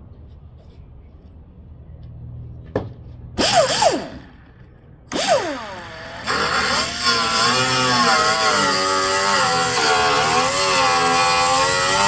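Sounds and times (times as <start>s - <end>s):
handheld power cutting tool: 3.4s - 4.4s, 5.1s - 12.0s.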